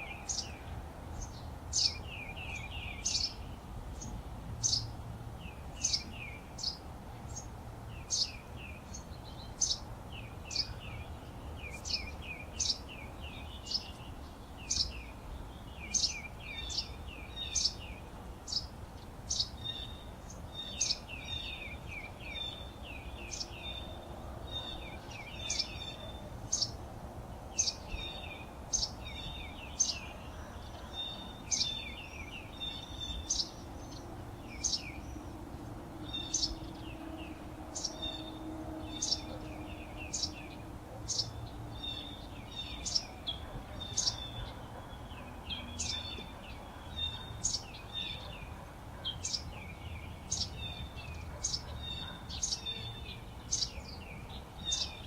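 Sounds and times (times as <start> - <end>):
songbirds chirping: 0.0 - 55.0
higher bird twittering: 36.0 - 53.8.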